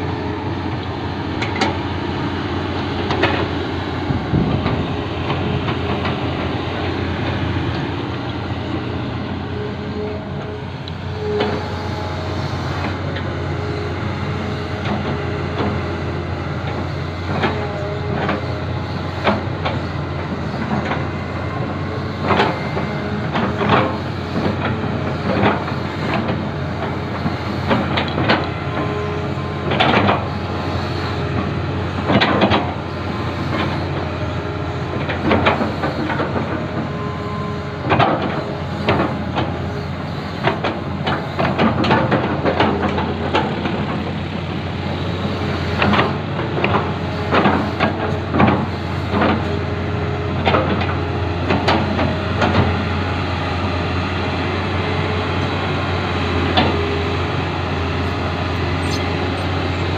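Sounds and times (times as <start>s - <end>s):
excavator diesel engine running: 0.0s - 59.9s.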